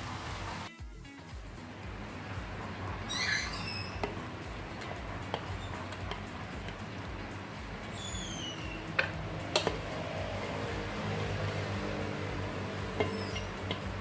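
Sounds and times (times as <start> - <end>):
steady low hum: 1.4 - 14.0
bird chirping: 3.0 - 4.4, 7.8 - 9.5, 12.9 - 14.0.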